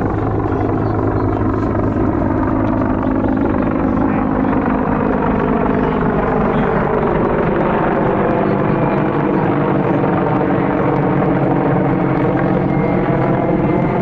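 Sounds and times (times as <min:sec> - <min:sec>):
loud engine-like drone: 0:00.0 - 0:14.0.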